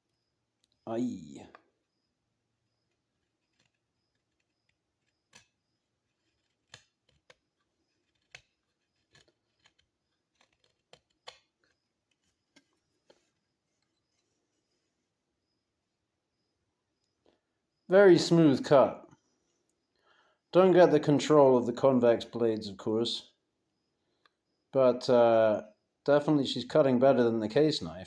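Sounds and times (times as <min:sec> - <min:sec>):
knife cutting wood: 0:02.7 - 0:14.3.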